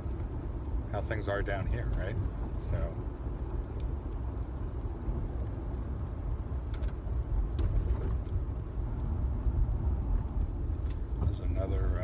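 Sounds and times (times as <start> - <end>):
car cabin road rumble: 0.0 - 12.0.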